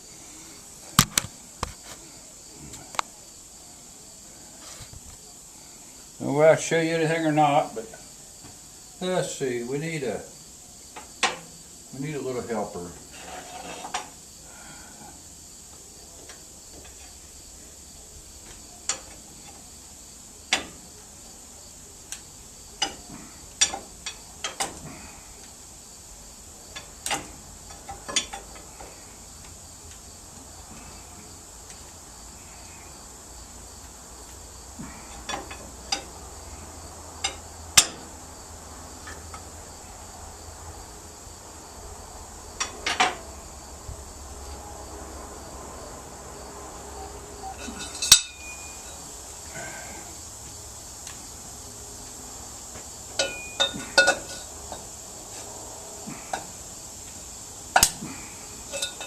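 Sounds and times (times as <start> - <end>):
crickets chirring: 0.0 - 59.0
tools clinking on metal: 47.6 - 49.0, 53.2 - 54.5, 58.7 - 59.0.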